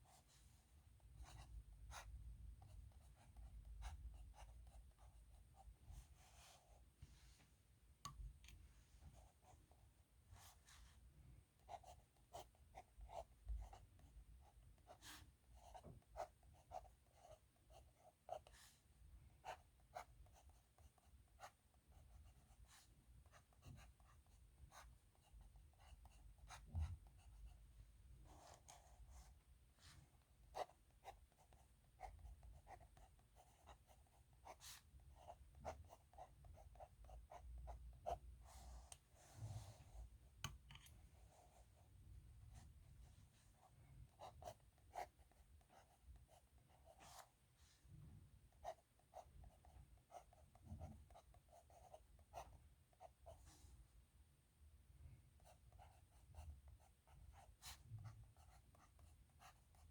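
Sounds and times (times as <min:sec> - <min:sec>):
pen scratching on paper: 0:01.2 - 0:06.8, 0:11.6 - 0:18.7, 0:19.4 - 0:27.6, 0:28.2 - 0:29.3, 0:30.5 - 0:40.0, 0:43.6 - 0:47.4, 0:48.5 - 0:53.6, 0:55.4 - 0:59.9.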